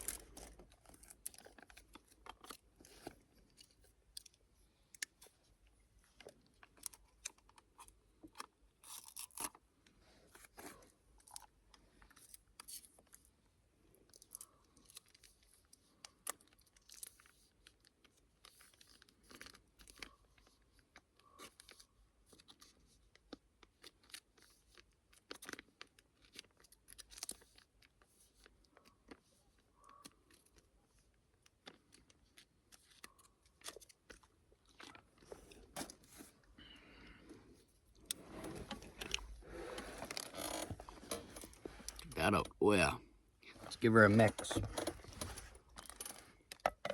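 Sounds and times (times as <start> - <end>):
plastic packaging rustling: 0.0 - 3.8.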